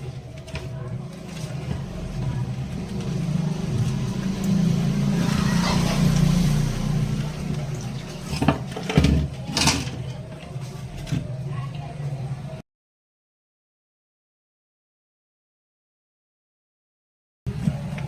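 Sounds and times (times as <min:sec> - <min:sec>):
mixer grinder motor humming: 0:02.5 - 0:08.8.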